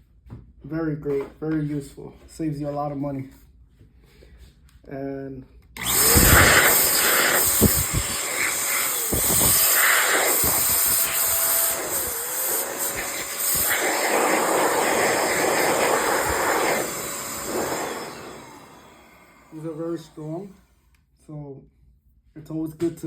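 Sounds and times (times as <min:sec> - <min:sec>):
air duster rushing hiss: 0:05.8 - 0:20.5
faint motor whine: 0:05.8 - 0:20.7.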